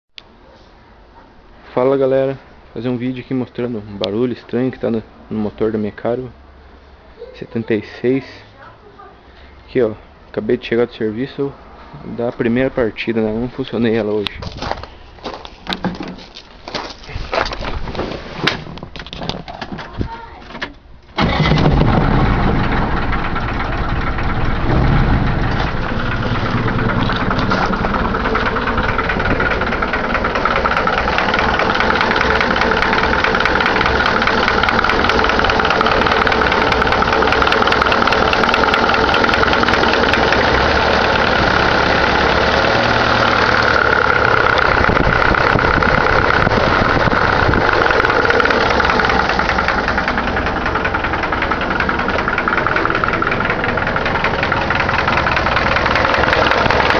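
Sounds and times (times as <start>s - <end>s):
car engine idling: 20.8s - 56.9s
fast light engine ticking: 21.2s - 56.9s.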